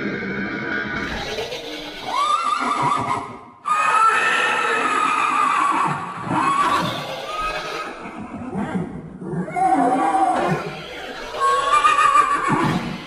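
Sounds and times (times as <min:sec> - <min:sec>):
dinosaur cry sound effect: 0:00.0 - 0:08.6, 0:09.4 - 0:13.0.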